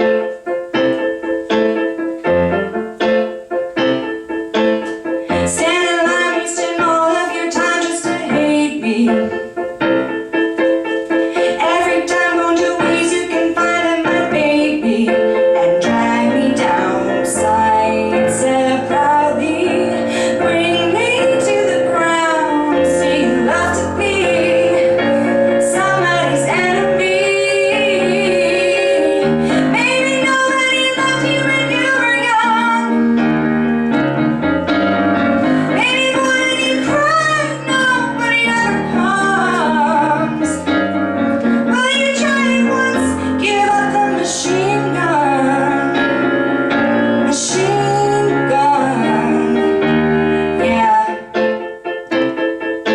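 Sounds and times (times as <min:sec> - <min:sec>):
piano accompaniment: 0:00.0 - 0:52.9
woman singing: 0:05.3 - 0:09.6, 0:11.4 - 0:33.1, 0:35.5 - 0:40.7, 0:41.7 - 0:46.2, 0:47.2 - 0:51.6.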